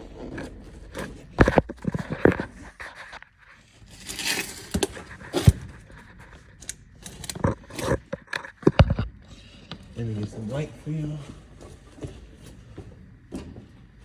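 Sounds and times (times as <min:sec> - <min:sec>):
rustling scrape: 0:00.0 - 0:08.6.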